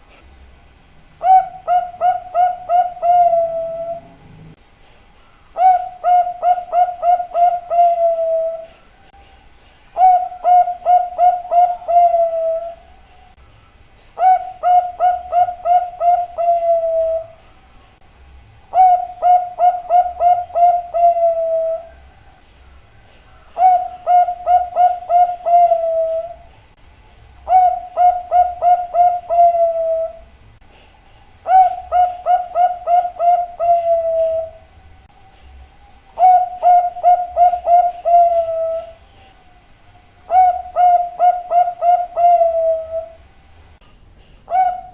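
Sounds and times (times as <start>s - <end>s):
dove cooing: 1.2s - 4.6s, 5.6s - 8.9s, 10.0s - 12.9s, 14.2s - 17.4s, 18.7s - 22.4s, 23.3s - 26.5s, 27.4s - 30.3s, 31.4s - 34.8s, 36.1s - 39.5s, 40.3s - 43.3s, 44.4s - 44.9s.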